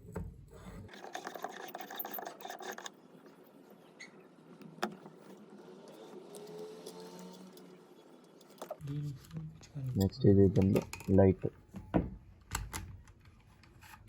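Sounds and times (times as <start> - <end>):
hard parts scraping and rubbing: 0.6 - 4.3, 5.0 - 9.4.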